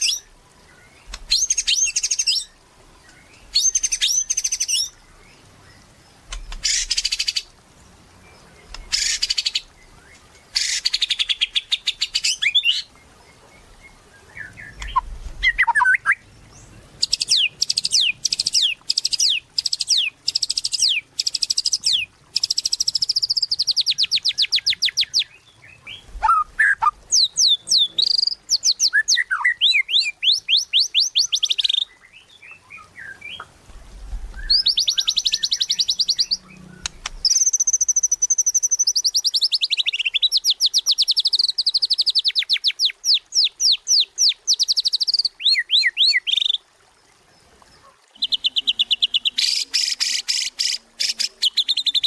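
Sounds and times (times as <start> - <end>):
bird singing with trills: 0.0 - 5.0, 13.8 - 33.5, 34.3 - 46.6.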